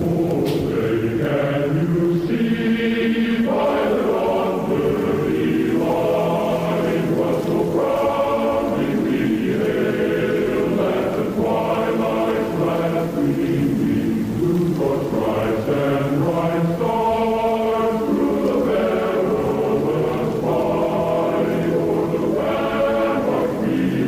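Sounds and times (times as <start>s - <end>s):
choir-like chanting music: 0.0s - 24.0s.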